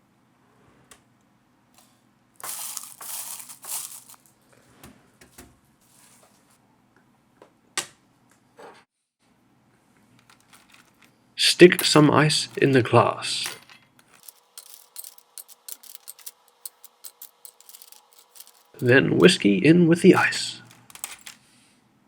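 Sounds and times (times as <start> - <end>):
ice shifting in a bag: 2.4 - 4.3, 14.0 - 19.0
plastic bag crinkling: 2.4 - 4.3, 13.9 - 19.0.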